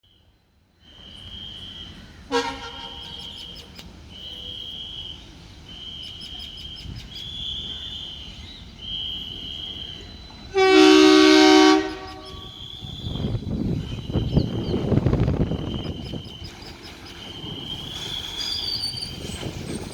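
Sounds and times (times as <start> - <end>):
train rumble: 0.2 - 19.9
locomotive horn: 1.3 - 3.2, 9.2 - 13.4.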